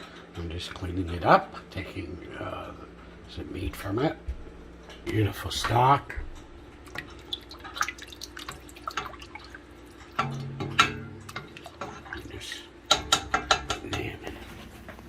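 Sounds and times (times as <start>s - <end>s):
utensil clicking in a pot: 12.8s - 14.1s.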